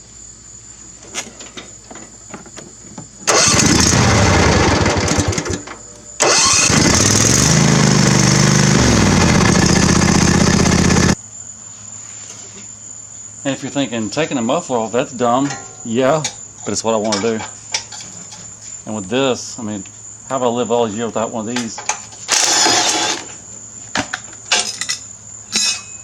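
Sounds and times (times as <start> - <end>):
engine turning over: 3.2 - 11.2, 22.3 - 23.2
mower engine starting and running: 3.2 - 11.2, 22.3 - 23.2.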